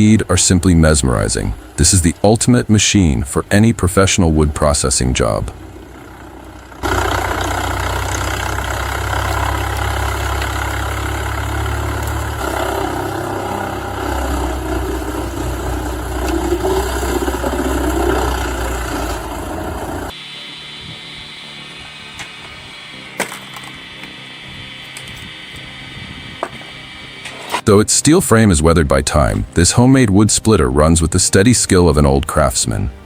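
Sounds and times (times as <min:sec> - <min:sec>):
wood chipper grinding branches: 0:00.0 - 0:20.2
diesel engine drone: 0:00.0 - 0:27.4, 0:28.3 - 0:29.9.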